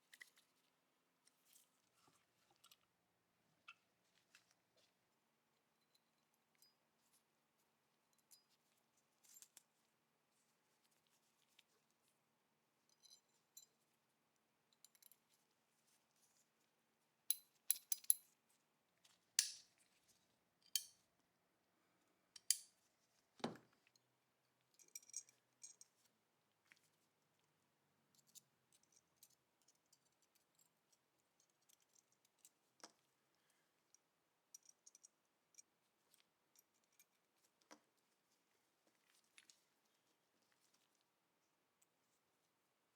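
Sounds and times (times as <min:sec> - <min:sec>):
metallic clicks of pistol parts: 0:17.3 - 0:18.2, 0:19.4 - 0:19.7, 0:20.6 - 0:21.0, 0:22.4 - 0:22.7.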